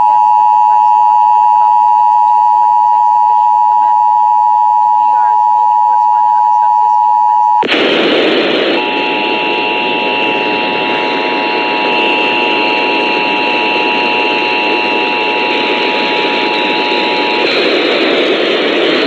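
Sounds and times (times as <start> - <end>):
multi-tone alert signal: 0.0 - 7.7
broadcast hiss: 7.6 - 13.6.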